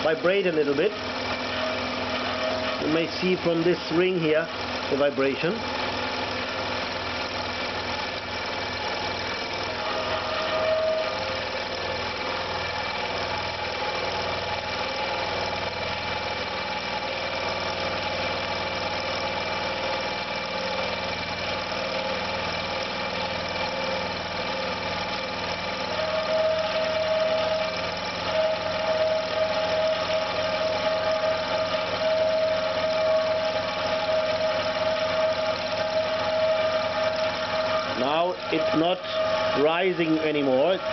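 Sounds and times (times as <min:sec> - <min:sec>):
air compressor motor vibrating: 0:00.0 - 0:40.9
high squealing tone: 0:09.5 - 0:11.8, 0:25.8 - 0:40.9.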